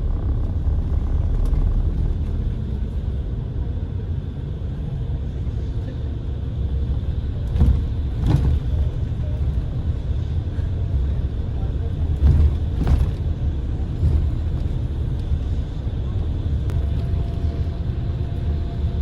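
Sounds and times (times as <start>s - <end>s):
vehicle rumble in motion: 0.0s - 19.0s
vehicle bumps: 12.1s - 13.4s.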